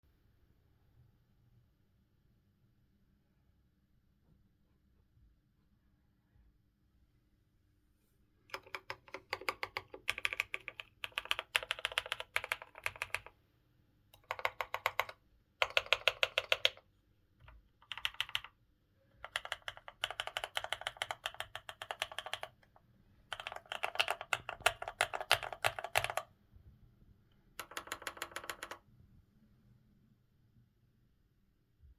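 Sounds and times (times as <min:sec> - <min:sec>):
mechanical keyboard keystroke clacks: 0:08.5 - 0:13.3, 0:14.2 - 0:16.8, 0:17.8 - 0:18.5, 0:19.2 - 0:22.7, 0:23.3 - 0:26.3, 0:27.6 - 0:28.8.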